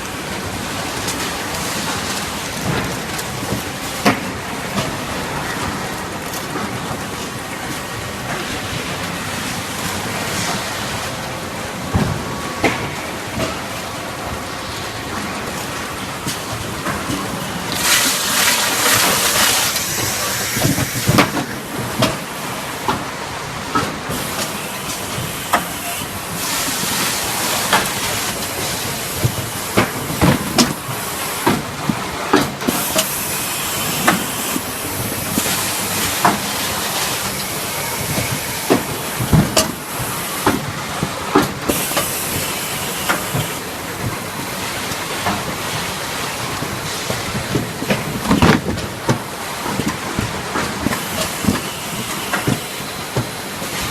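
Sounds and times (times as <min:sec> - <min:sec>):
pneumatic air hiss: 0:17.8 - 0:21.5, 0:41.7 - 0:43.6.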